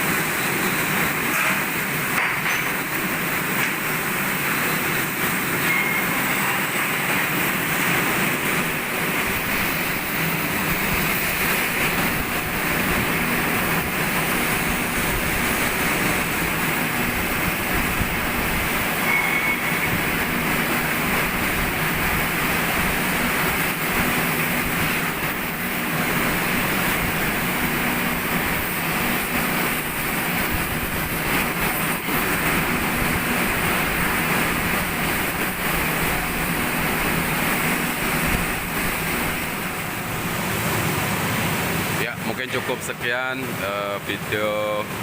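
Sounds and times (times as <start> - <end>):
machinery hiss and drone: 0.0 - 45.0
brief high tone: 5.6 - 6.2, 19.0 - 19.9.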